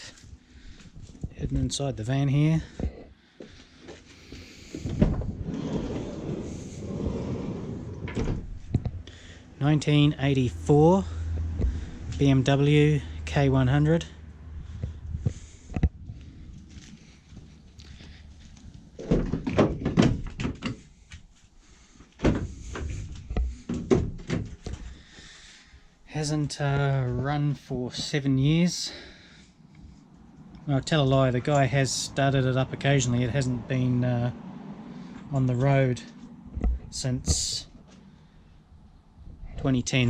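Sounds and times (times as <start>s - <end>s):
sliding door rumbling scrape: 4.5s - 8.8s
van door clunk: 4.7s - 8.8s.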